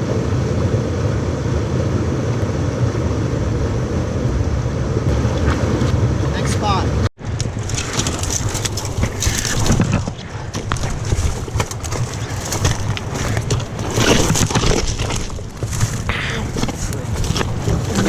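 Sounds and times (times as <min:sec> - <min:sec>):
creek water rushing: 0:00.0 - 0:14.0
clicks and knocks of rocks: 0:07.3 - 0:18.0.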